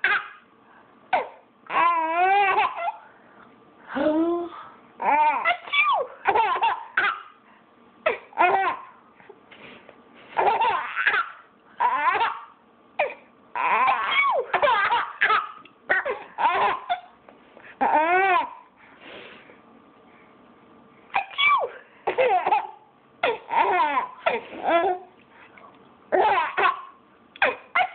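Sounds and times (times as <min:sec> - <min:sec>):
baby laughing: 0:00.0 - 0:00.4, 0:01.2 - 0:03.0, 0:05.0 - 0:07.4, 0:08.1 - 0:09.0, 0:10.4 - 0:17.2, 0:21.2 - 0:25.1, 0:26.1 - 0:27.9.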